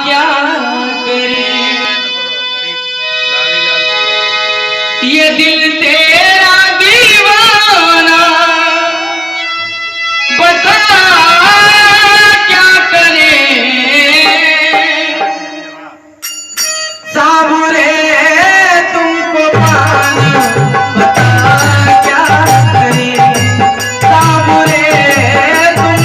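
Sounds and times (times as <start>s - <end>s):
devotional music: 0.0s - 26.0s.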